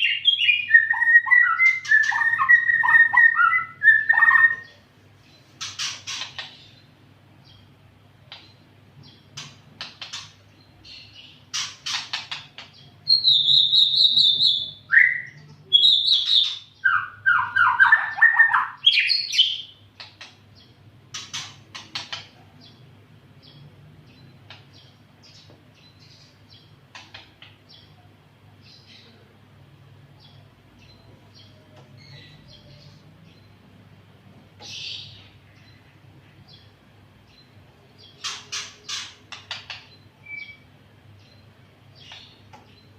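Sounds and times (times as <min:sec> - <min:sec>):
bird singing whistled phrases: 0:00.0 - 0:04.7, 0:13.1 - 0:19.6, 0:40.2 - 0:40.6
bird chirps and clicks: 0:08.3 - 0:10.4, 0:11.5 - 0:12.9, 0:18.3 - 0:20.4, 0:24.4 - 0:25.6, 0:26.9 - 0:27.9, 0:38.2 - 0:40.6, 0:42.0 - 0:42.9.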